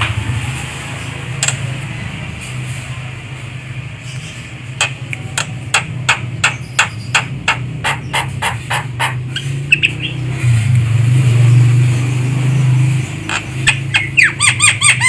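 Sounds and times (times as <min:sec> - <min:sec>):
bird clicking calls: 0:04.7 - 0:10.2, 0:13.3 - 0:15.0.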